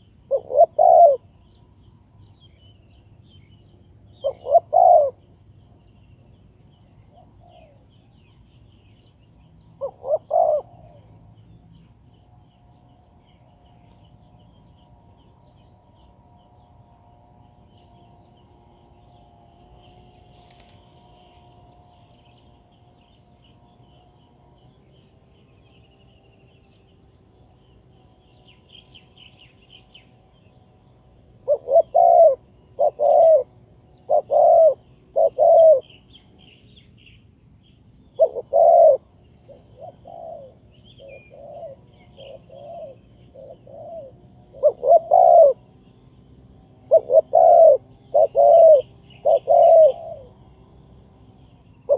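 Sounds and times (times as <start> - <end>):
dove cooing: 0.0 - 1.3, 4.2 - 5.3, 7.0 - 7.9, 9.8 - 11.2, 31.4 - 36.0, 38.1 - 45.8, 46.7 - 50.4
small birds chirping: 0.0 - 51.9.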